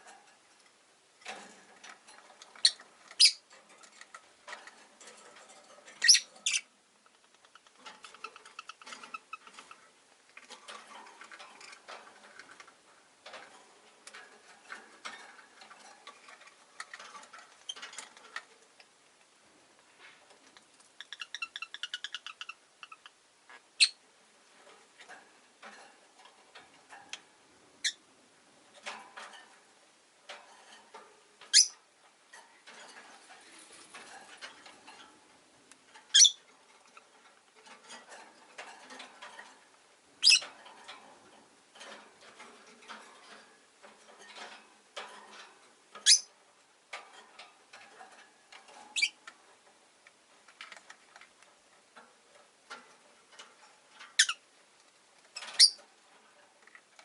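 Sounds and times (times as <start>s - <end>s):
soft clicking and rustling: 0.0s - 23.7s, 24.3s - 57.0s
lovebirds chirping: 2.6s - 3.4s, 6.0s - 6.7s, 36.1s - 36.4s, 55.5s - 55.8s.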